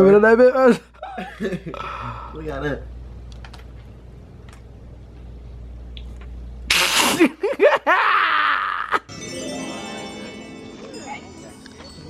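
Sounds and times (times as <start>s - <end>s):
music with steady notes: 9.1s - 12.0s.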